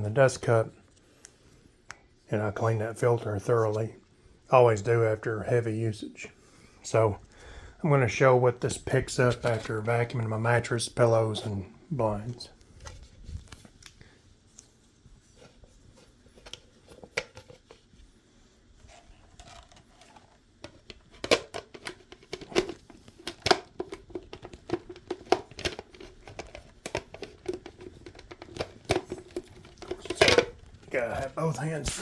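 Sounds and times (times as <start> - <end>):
plastic clicks and rustling: 16.2 - 17.9, 18.8 - 31.4.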